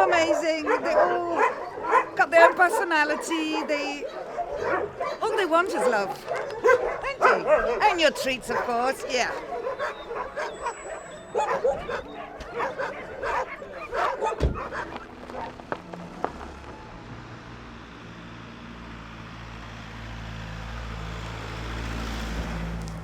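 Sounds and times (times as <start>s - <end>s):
dogs barking and yipping: 0.0s - 16.9s
engine hum: 0.0s - 23.0s
thump: 14.4s - 15.0s.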